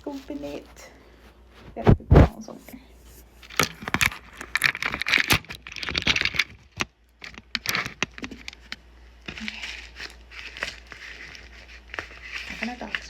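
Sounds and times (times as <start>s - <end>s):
packaging crinkling and rustling: 3.3s - 13.0s
small clicks and knocks: 3.5s - 8.8s.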